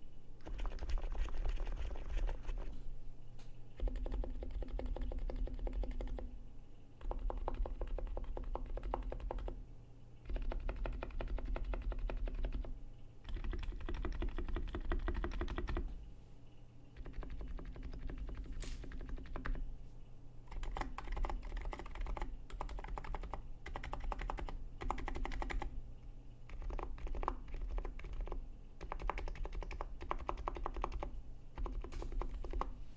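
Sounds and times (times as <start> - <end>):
keyboard typing: 0.4 - 2.7, 3.8 - 6.3, 7.0 - 9.6, 10.2 - 16.0, 17.0 - 19.6, 20.5 - 25.8, 26.5 - 32.8.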